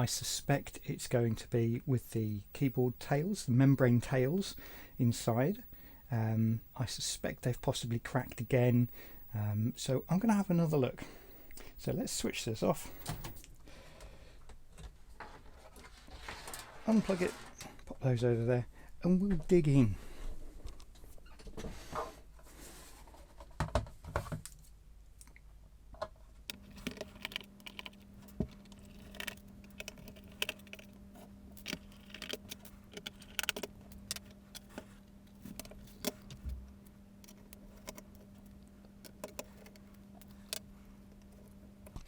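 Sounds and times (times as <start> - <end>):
faint steady hum: 0.0 - 14.3
small clicks and clatters: 26.0 - 42.0.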